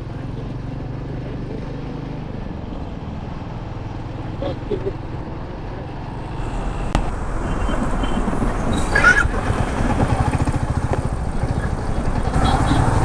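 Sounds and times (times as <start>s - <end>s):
motorcycle engine running: 6.3s - 13.0s.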